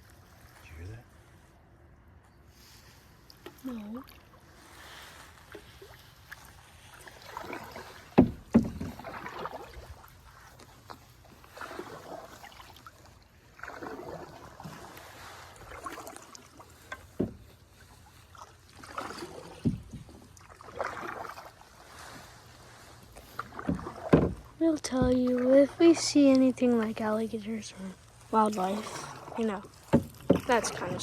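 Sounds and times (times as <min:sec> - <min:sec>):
paddle swishing through water: 0:00.0 - 0:31.0
sharp knocks: 0:08.2 - 0:08.9.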